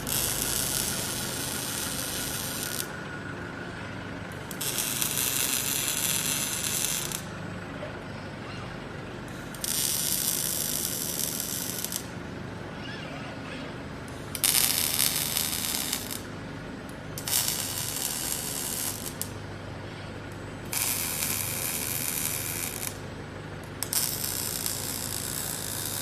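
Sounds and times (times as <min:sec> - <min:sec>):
arc welding crackling hiss: 0:00.0 - 0:02.9, 0:04.5 - 0:07.3, 0:09.5 - 0:12.1, 0:14.3 - 0:16.3, 0:17.2 - 0:19.4, 0:20.6 - 0:23.0, 0:23.8 - 0:26.0
steady machine hum: 0:00.0 - 0:26.0.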